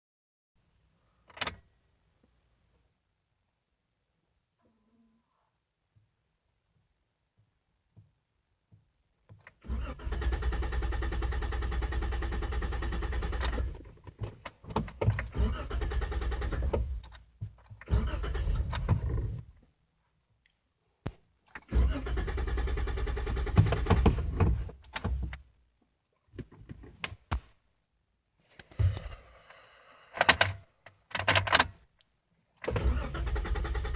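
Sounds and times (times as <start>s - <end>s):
car engine cranking: 9.7s - 13.9s, 15.0s - 17.1s, 17.8s - 19.5s, 21.6s - 25.3s, 32.6s - 33.9s.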